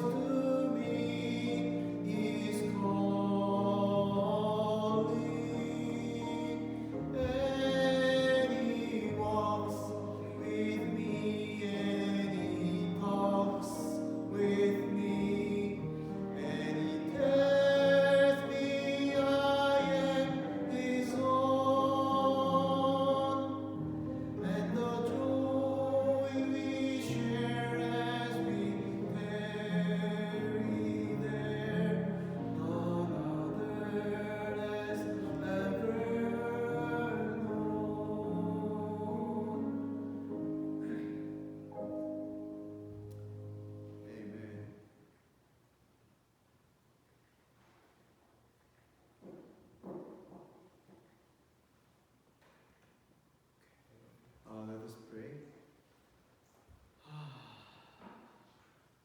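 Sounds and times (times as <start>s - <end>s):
hymn singing: 0.0s - 45.0s.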